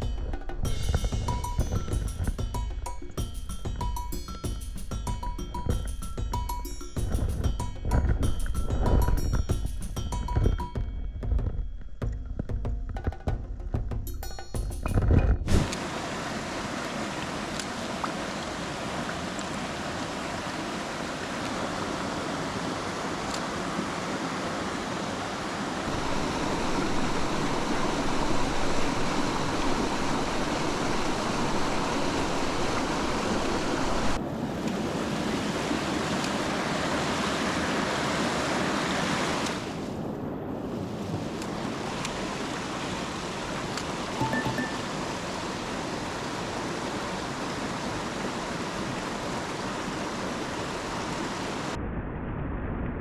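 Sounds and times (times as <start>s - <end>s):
stream rushing over rocks: 15.5s - 51.8s.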